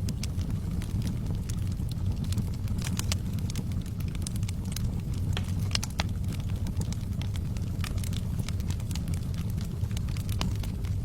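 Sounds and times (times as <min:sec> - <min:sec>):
wood fire crackling: 0:00.0 - 0:11.0.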